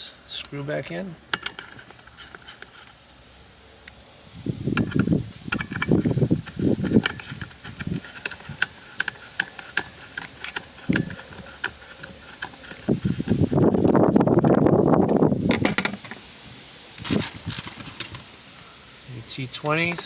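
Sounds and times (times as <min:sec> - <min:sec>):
scraping rustle: 0:00.7 - 0:18.7
ratchet screwdriver clicking: 0:04.7 - 0:13.6
plastic knocking and rubbing: 0:04.7 - 0:14.1, 0:15.0 - 0:16.2.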